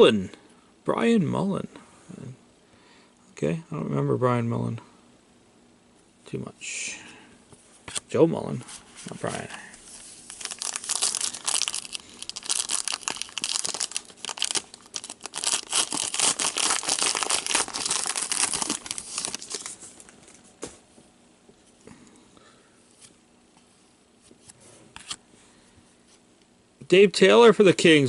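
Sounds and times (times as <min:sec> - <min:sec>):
wrapper tearing and crinkling: 0:10.0 - 0:20.2.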